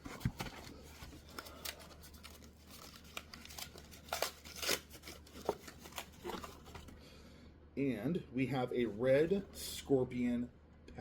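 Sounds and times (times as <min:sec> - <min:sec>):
packaging crinkling and tearing: 0:00.2 - 0:06.9.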